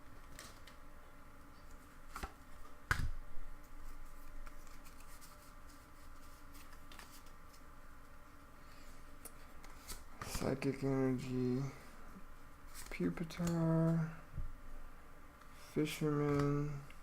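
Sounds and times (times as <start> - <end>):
cards handled with light clicks: 1.4 - 8.1, 9.2 - 10.8, 12.7 - 14.0, 15.4 - 17.0.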